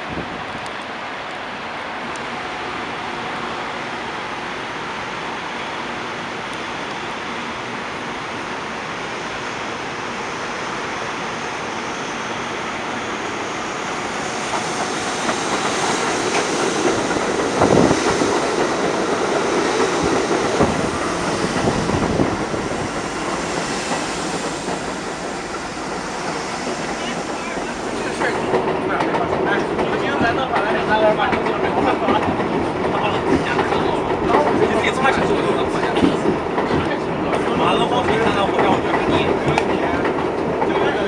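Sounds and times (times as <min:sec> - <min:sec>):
subway train rumbling past: 0:00.0 - 0:41.0.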